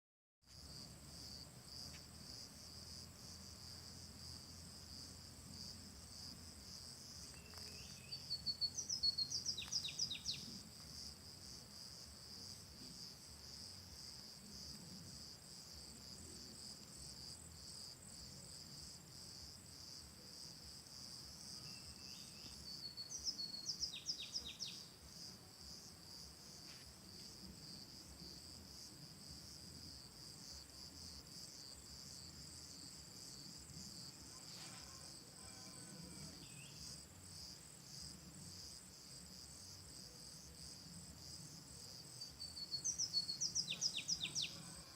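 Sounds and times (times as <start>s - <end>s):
songbird singing: 6.1s - 10.8s, 21.4s - 25.2s, 34.9s - 37.0s, 42.1s - 44.9s
insects trilling: 6.1s - 11.1s, 41.2s - 44.9s.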